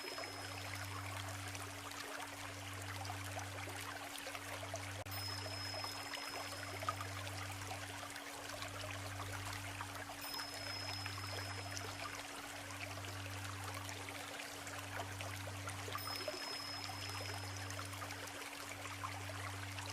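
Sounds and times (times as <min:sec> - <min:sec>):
thin high tone: 0:00.0 - 0:01.8, 0:05.0 - 0:08.0, 0:10.1 - 0:19.7
river babbling over stones: 0:00.0 - 0:04.2, 0:05.2 - 0:19.9
low pulsing hum: 0:00.0 - 0:19.9.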